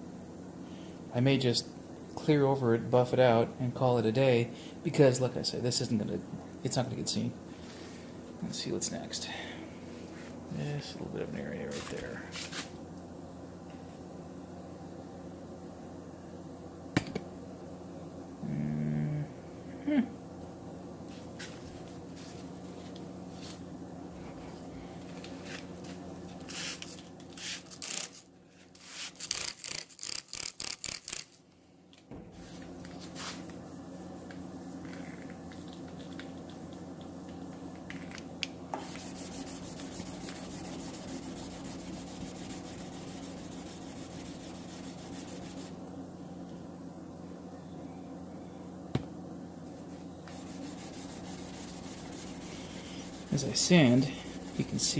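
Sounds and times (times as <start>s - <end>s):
steady low hum: 0.0s - 28.9s, 31.0s - 54.9s
wet sandpaper rubbing: 38.8s - 45.8s, 50.3s - 54.9s.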